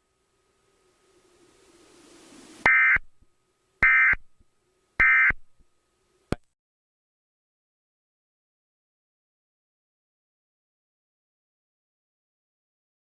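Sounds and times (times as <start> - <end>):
hiss: 1.1 - 2.7.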